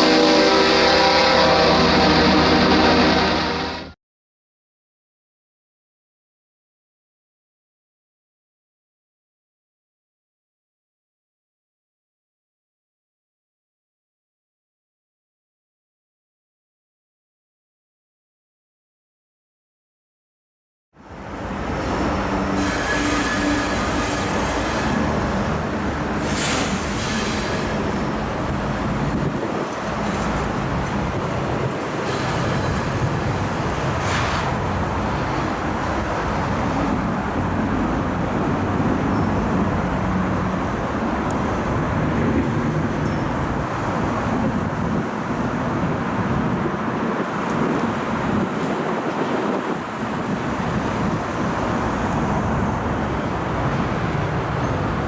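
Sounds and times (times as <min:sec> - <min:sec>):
train wheels rumbling on rails: 0:21.2 - 0:55.0
high wheel squeaks: 0:22.4 - 0:25.5.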